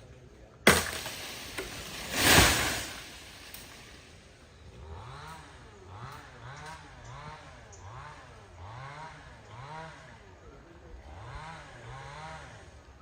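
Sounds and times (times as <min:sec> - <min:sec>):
sharp crack: 0:00.6 - 0:04.3
loud rushing crash: 0:00.7 - 0:04.2
chainsaw engine running: 0:00.7 - 0:13.0.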